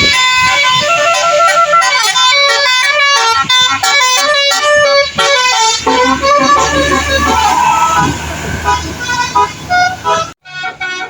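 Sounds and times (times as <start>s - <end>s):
bus horn melody: 0.0s - 11.0s
low engine hum: 5.6s - 10.4s.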